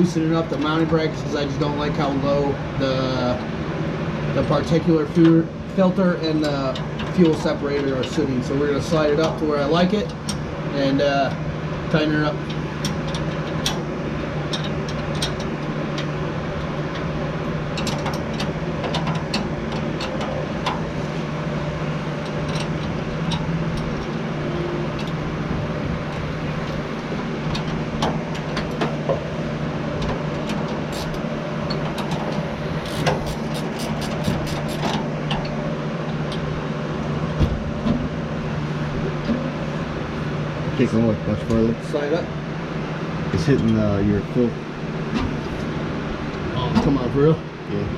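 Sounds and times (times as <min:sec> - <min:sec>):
steady mechanical hum: 0:00.0 - 0:47.9
ratchet wrench clicking: 0:30.9 - 0:31.2, 0:32.8 - 0:35.0.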